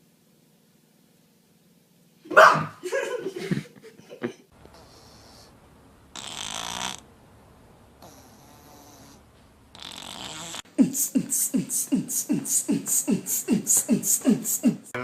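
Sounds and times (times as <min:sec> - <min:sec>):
rhythmic beatboxing: 0:10.7 - 0:15.0.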